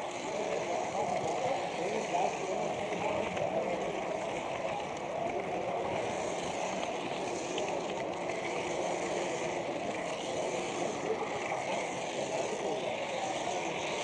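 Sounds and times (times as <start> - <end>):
model train rolling on track: 0.0 - 14.0.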